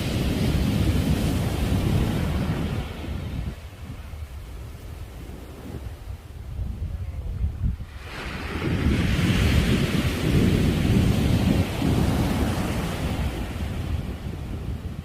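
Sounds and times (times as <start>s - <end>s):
sea wave breaking: 7.8s - 14.6s.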